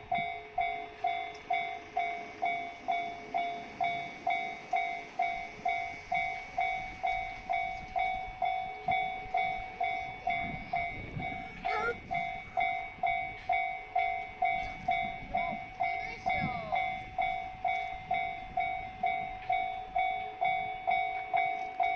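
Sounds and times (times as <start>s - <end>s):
level-crossing alarm dinging: 0.0s - 21.9s.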